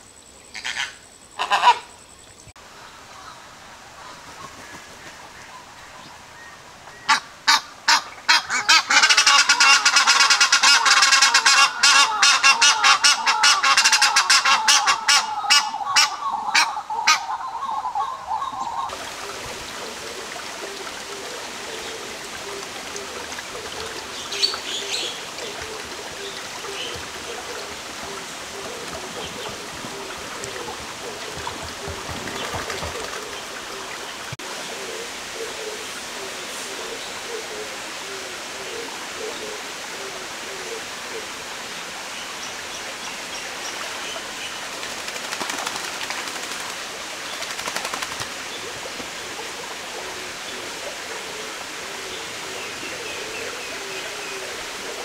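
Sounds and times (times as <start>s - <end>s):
geese honking: 7.1s - 18.9s.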